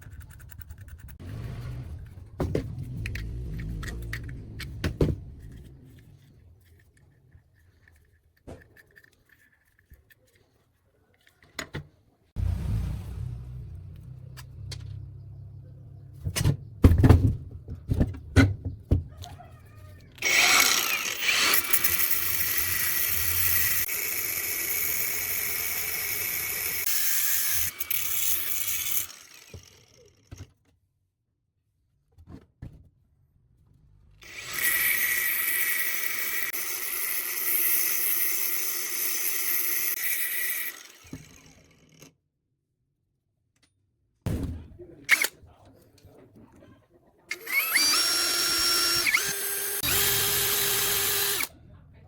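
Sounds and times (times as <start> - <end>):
power tool whining: 20.1 - 30.4, 34.2 - 42.1, 47.3 - 51.5.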